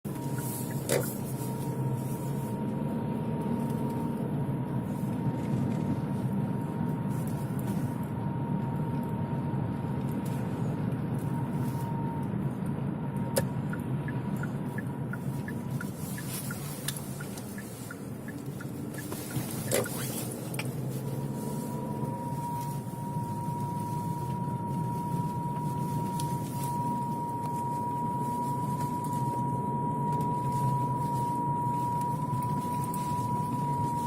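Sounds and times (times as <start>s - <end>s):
car engine rumble: 0.0s - 34.0s
thin steady whistle: 21.2s - 34.0s.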